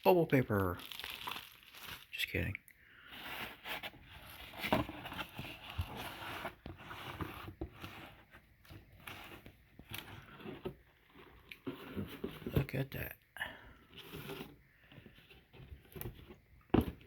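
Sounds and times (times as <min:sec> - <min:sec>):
paper and cardboard rustling: 0:03.1 - 0:12.7.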